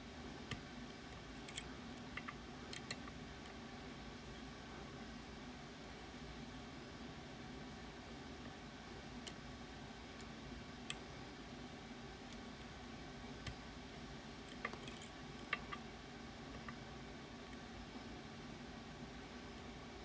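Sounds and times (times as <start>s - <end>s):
steady low hum: 0.0s - 20.0s
lock picks clicking: 1.1s - 3.0s, 14.5s - 15.8s.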